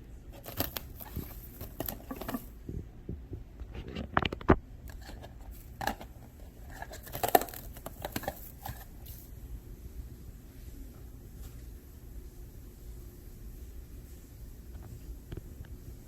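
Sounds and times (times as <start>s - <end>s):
rustling: 0.3s - 2.9s, 3.6s - 9.4s.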